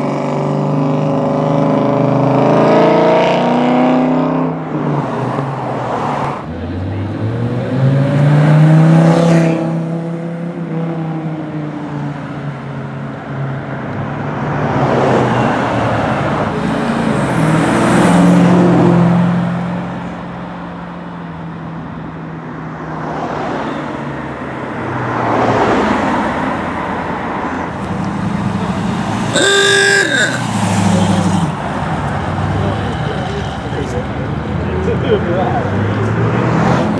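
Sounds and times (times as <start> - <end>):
cars accelerating past: 0.0 - 11.4, 24.8 - 36.9.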